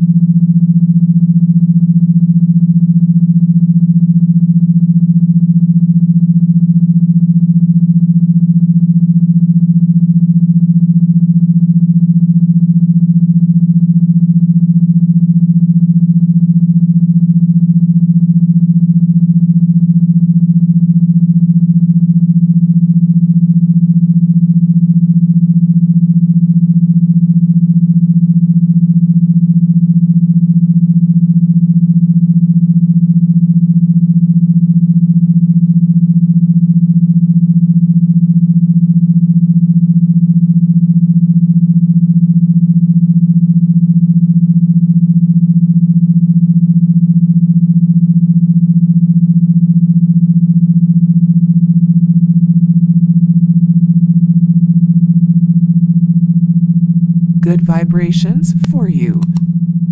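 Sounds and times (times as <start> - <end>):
synthesized low buzz tone: 0.0 - 30.4, 34.6 - 37.9, 57.2 - 59.4.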